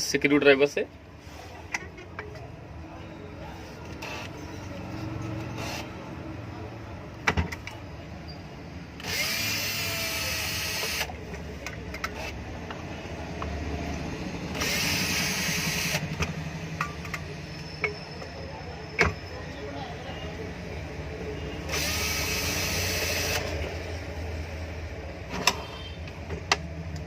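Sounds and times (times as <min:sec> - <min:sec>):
electric drill whirring: 0:09.0 - 0:11.1, 0:14.5 - 0:16.2, 0:21.7 - 0:23.6.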